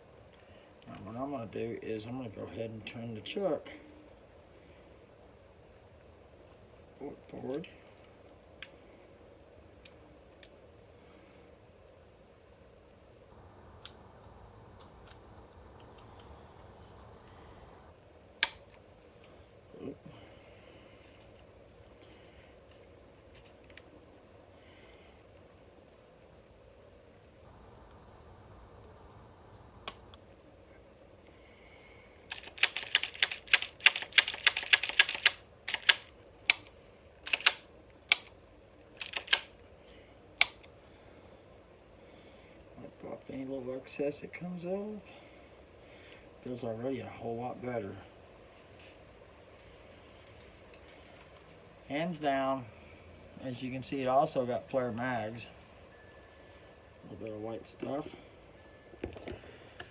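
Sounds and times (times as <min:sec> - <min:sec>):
metallic clicks of pistol parts: 0:32.3 - 0:38.4, 0:39.0 - 0:39.6, 0:40.4 - 0:40.7.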